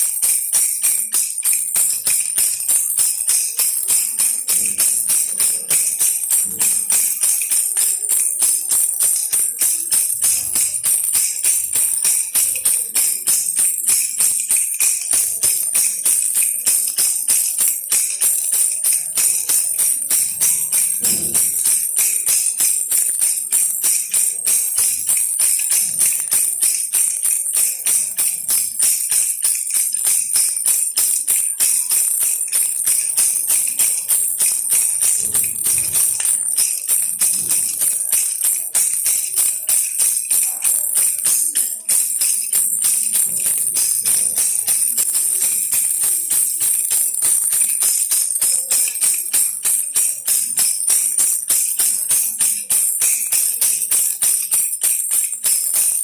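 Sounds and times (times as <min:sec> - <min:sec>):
baby rattle shaken: 0:00.0 - 0:56.0.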